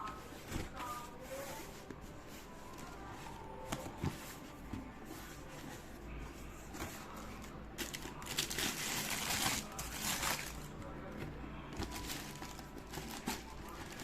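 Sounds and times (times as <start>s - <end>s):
shoebox packaging handling: 6.7s - 14.0s.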